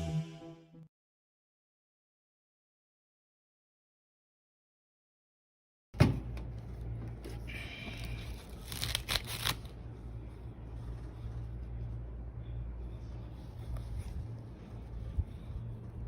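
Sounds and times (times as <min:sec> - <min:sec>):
steady low hum: 0:06.0 - 0:16.0.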